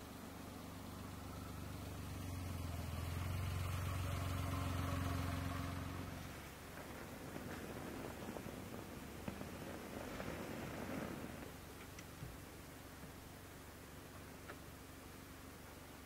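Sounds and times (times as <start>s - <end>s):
motor passing by: 1.1s - 7.8s.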